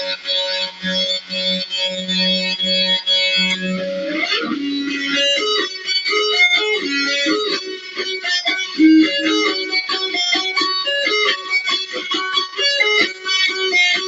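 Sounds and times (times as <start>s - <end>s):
electric guitar shredding: 0.0s - 14.0s.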